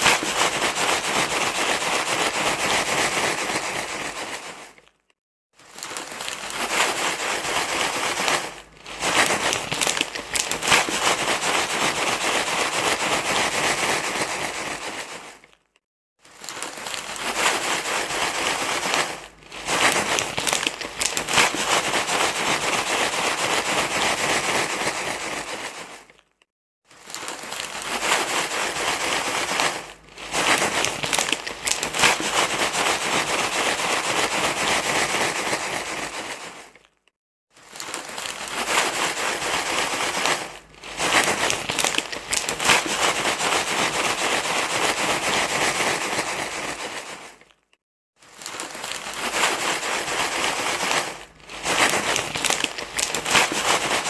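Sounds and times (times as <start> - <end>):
crinkling and rustling: 0.0 - 54.0.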